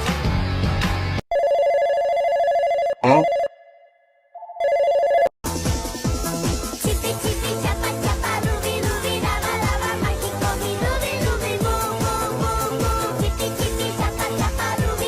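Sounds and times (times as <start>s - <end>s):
telephone ringing: 1.3s - 3.8s, 4.4s - 5.3s
pop music: 6.3s - 15.0s.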